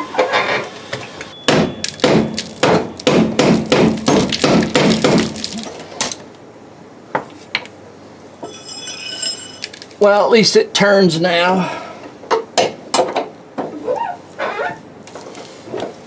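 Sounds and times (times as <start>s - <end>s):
hammer striking metal: 1.4s - 5.2s.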